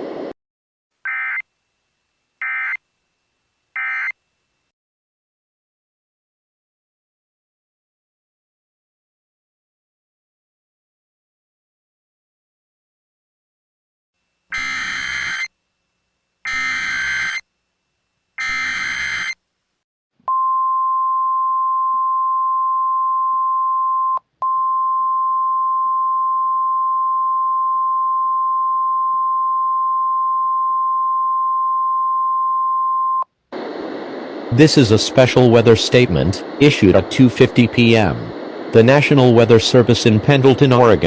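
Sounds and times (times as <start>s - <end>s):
steady alarm tone: 1.1s - 1.4s, 2.4s - 2.8s, 3.8s - 4.2s, 14.4s - 15.6s, 16.4s - 17.5s, 18.4s - 19.4s
screechy digital data bursts: 14.5s - 15.5s, 16.4s - 17.4s, 18.4s - 19.4s.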